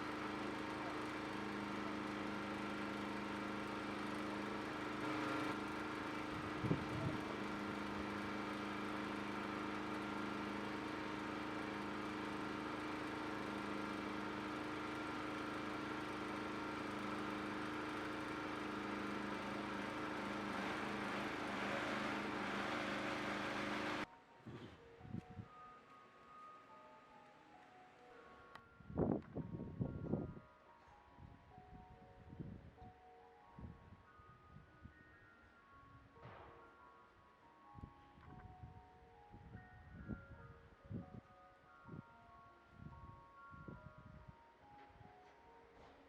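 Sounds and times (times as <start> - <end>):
steady mechanical hum: 0.0 - 26.8.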